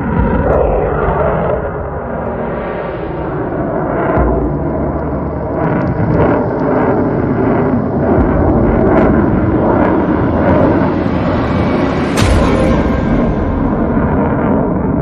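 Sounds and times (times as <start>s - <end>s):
rocket engine exhaust roar: 0.0s - 15.0s.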